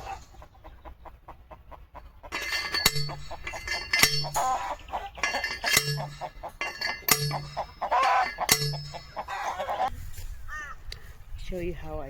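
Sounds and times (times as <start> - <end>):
chickens clucking: 0.0 - 9.9
metal post driver clanging: 2.3 - 9.9.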